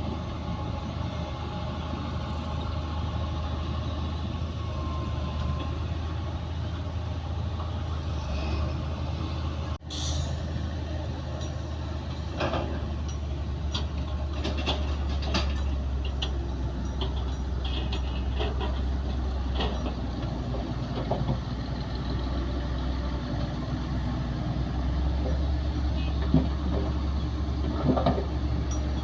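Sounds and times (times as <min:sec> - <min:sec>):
bulldozer diesel engine droning: 0:00.0 - 0:29.0
metallic clanks and clicks: 0:12.3 - 0:21.5, 0:27.6 - 0:29.0.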